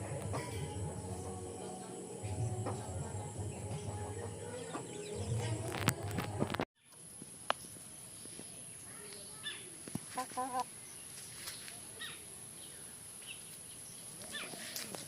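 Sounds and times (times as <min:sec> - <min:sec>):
steady low hiss: 0:00.0 - 0:08.9.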